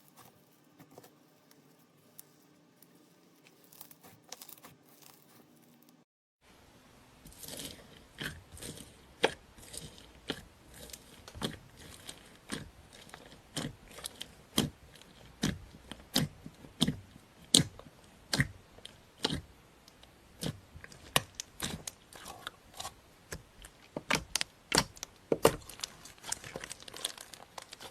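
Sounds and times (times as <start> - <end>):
slime popping and crunching: 23.6 - 27.9.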